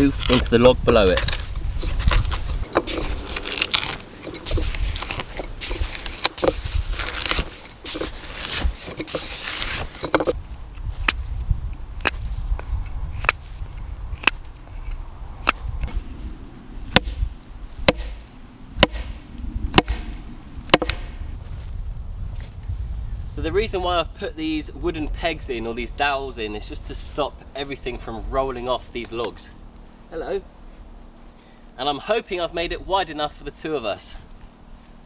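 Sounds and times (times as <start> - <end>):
scraping and rustling: 0.0 - 16.2.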